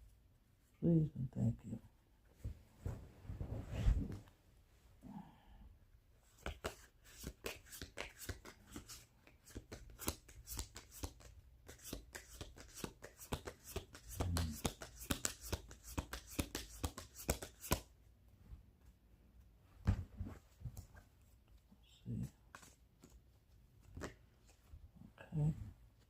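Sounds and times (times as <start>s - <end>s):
cards being shuffled: 6.3s - 17.9s, 22.5s - 23.2s, 23.8s - 24.6s.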